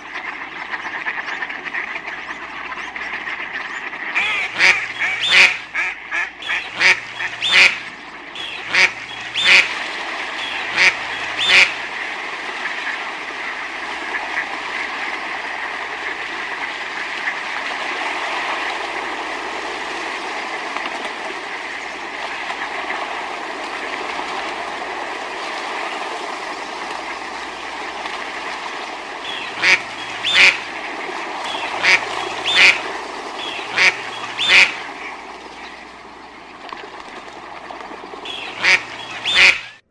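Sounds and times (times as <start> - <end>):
ducks quacking: 0.0 - 12.0, 29.2 - 30.8, 31.4 - 36.0, 38.1 - 39.8
steady background noise: 0.0 - 39.8.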